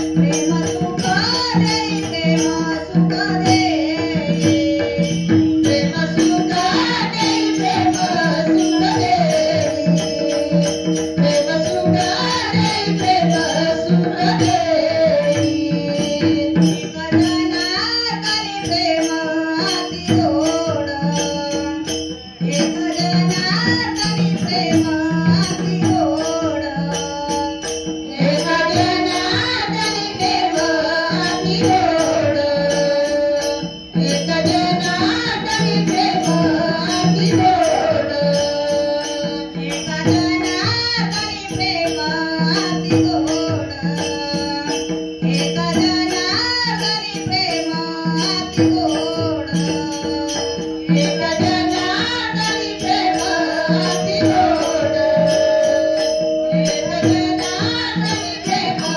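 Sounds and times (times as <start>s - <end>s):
devotional singing: 0.0s - 58.9s
metallic jingling percussion: 0.0s - 58.9s
drum beat: 52.7s - 57.5s.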